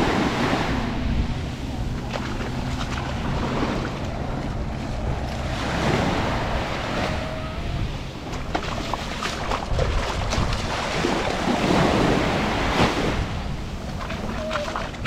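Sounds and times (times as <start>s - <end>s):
sea waves washing on beach: 0.0s - 15.0s
wind buffeting microphone: 0.0s - 15.0s.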